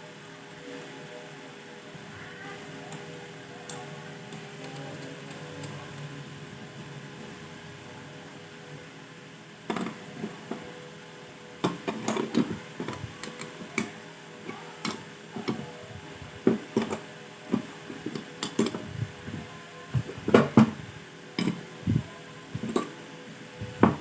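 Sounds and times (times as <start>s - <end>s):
faint steady hum: 0.0s - 24.0s
clicks of tools being handled: 21.4s - 21.6s.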